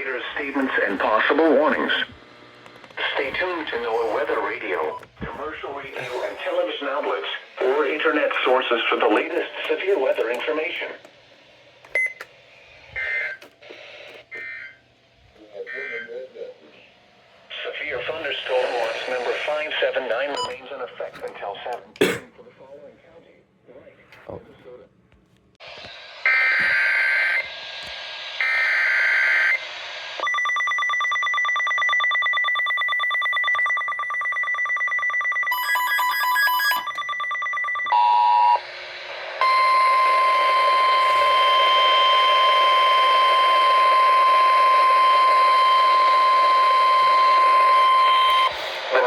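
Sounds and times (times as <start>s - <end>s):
steady warning alarm tone: 12.9s - 14.8s, 15.4s - 16.5s, 26.2s - 27.6s, 28.4s - 49.0s
pulsing electronic alarm beeps: 13.0s - 13.4s, 15.6s - 16.2s, 26.3s - 27.6s, 28.4s - 38.7s, 39.4s - 49.0s.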